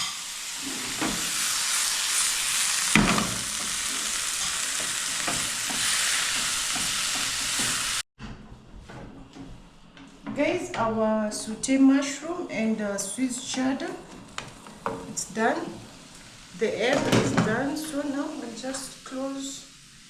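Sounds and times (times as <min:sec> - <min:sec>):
spatula scraping pan: 0:00.0 - 0:08.0
eggs sizzling in frying pan: 0:00.0 - 0:08.1, 0:13.0 - 0:20.0.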